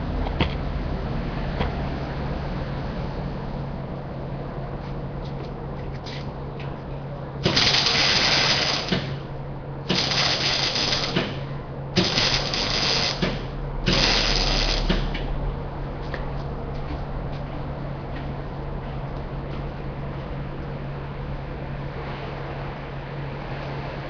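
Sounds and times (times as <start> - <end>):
arc welder crackling: 7.4 - 15.3.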